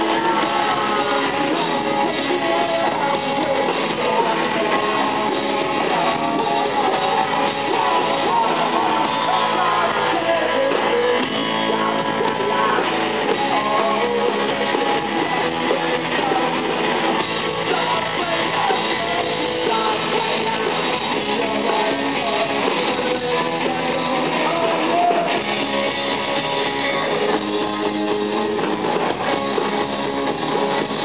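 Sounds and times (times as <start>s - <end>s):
rock band playing live: 0.0s - 31.0s
strummed guitars: 0.0s - 31.0s.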